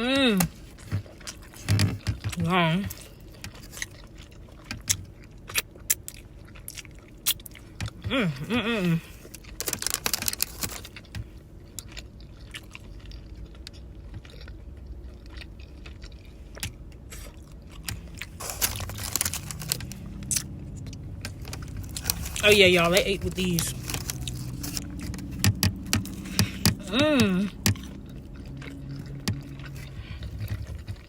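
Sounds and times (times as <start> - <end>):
crunchy chewing: 0.4 - 8.0, 9.0 - 31.0
person humming: 26.6 - 27.7.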